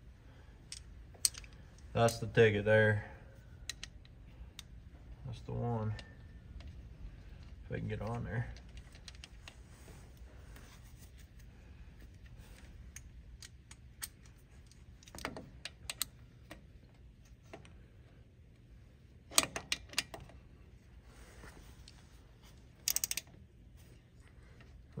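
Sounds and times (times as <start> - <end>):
hand tool clicking on metal: 22.9 - 23.3.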